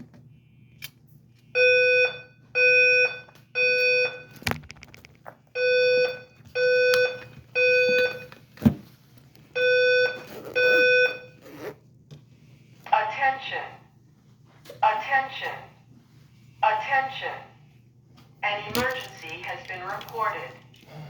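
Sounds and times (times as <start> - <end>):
fire alarm beeps: 1.5 - 4.4, 5.6 - 8.4, 9.6 - 11.4.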